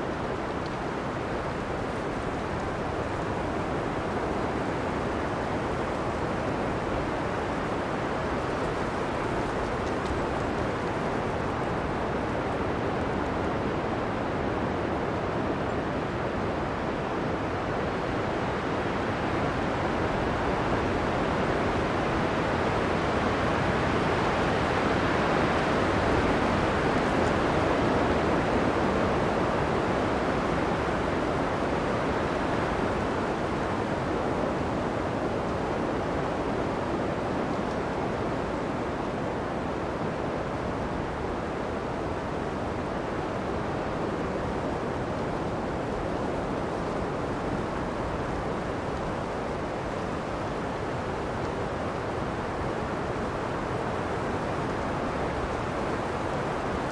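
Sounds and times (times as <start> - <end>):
strong blizzard wind blowing: 0.0 - 56.9.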